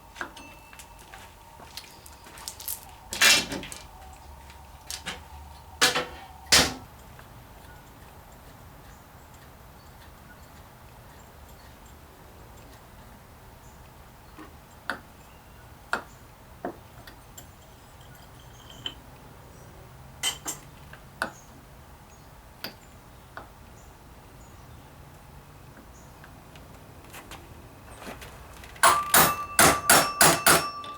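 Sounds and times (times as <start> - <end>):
low steady background noise: 0.0 - 30.9
hand tools clicking and knocking: 26.2 - 30.9.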